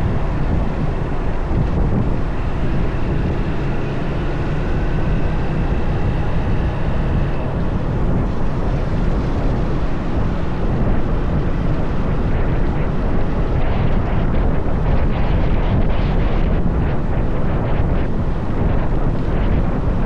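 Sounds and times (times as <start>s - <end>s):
motorcycle engine: 0.0s - 15.1s
road noise: 0.0s - 20.0s
wind buffeting microphone: 0.0s - 20.0s.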